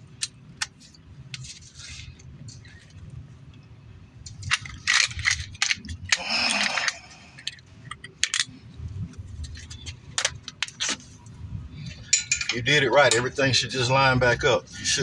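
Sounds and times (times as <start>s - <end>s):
metal parts and tools clinking: 4.2s - 8.6s, 11.8s - 13.5s.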